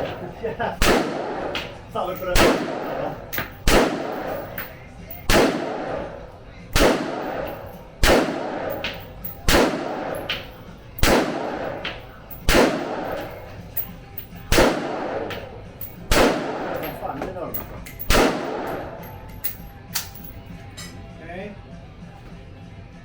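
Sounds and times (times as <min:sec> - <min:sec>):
gunshots with echo: 0:00.0 - 0:13.8, 0:14.4 - 0:17.2, 0:18.0 - 0:19.3.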